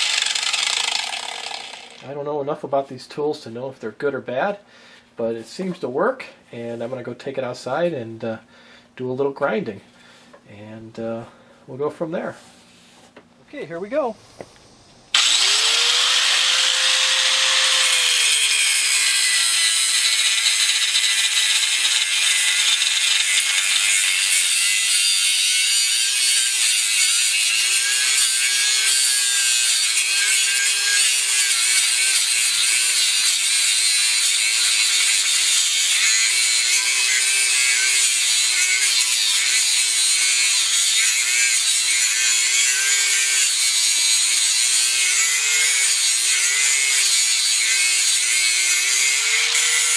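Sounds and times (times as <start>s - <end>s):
angle grinder cutting metal: 0.0s - 2.2s, 14.4s - 49.9s.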